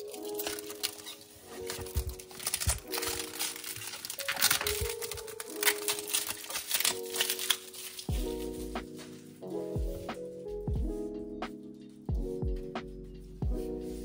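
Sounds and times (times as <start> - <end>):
packaging crinkling: 0.0 - 9.6
soft background music: 0.0 - 14.0.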